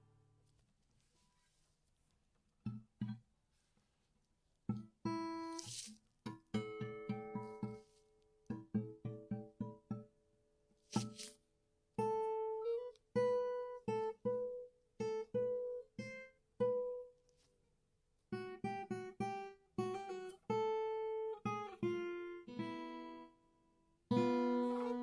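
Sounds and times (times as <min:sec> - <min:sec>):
acoustic guitar plucked: 0:02.6 - 0:03.2, 0:04.7 - 0:10.2, 0:12.0 - 0:17.1, 0:18.3 - 0:23.4, 0:24.1 - 0:25.0.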